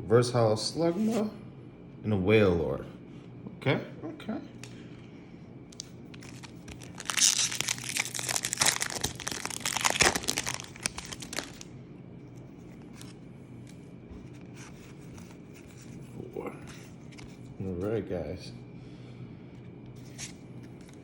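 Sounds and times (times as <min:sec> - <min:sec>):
foil wrapper crinkling and tearing: 0:05.8 - 0:11.7.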